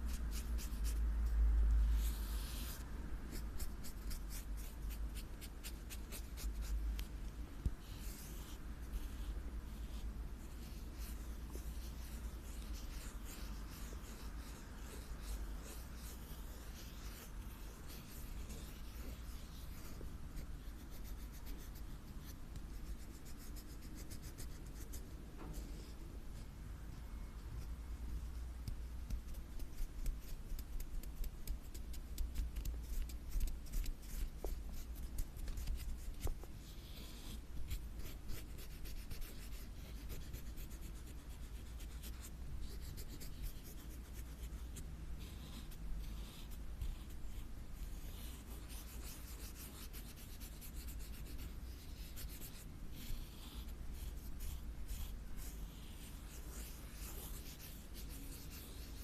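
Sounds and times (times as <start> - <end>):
scratchy rubbing strokes: 0.0 - 26.0, 28.6 - 59.0.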